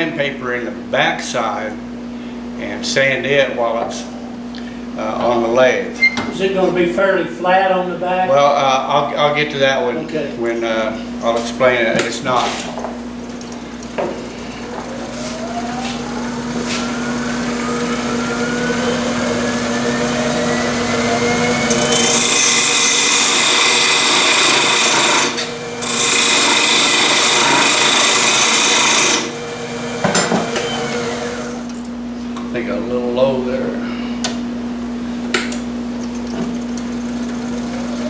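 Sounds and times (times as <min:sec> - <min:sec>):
tool scraping spinning wood: 0:11.1 - 0:31.8, 0:36.0 - 0:38.0
wood lathe humming and whining: 0:11.3 - 0:32.0, 0:36.0 - 0:38.0.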